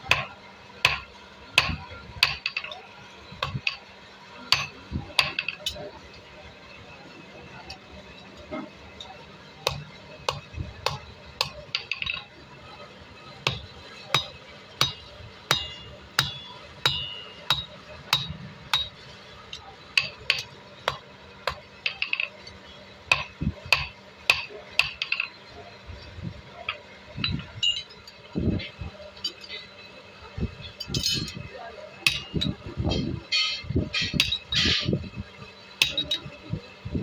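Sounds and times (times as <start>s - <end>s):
hammer striking steel: 0.0s - 2.8s, 3.4s - 3.8s, 4.5s - 5.9s, 9.6s - 12.3s, 13.4s - 22.4s, 23.1s - 25.4s, 32.0s - 32.6s, 33.3s - 34.9s, 35.8s - 36.3s.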